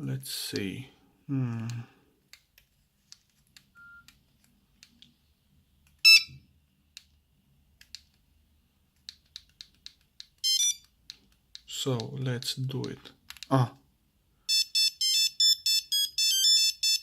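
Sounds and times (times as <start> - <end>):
multi-tone electronic beep: 6.0 - 6.4, 10.4 - 10.8
phone keypad buttons clicking: 9.1 - 11.7.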